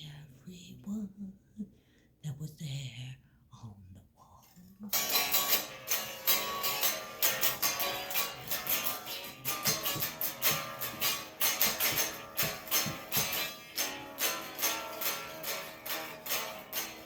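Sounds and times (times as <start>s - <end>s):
strummed guitar music: 4.9s - 17.0s.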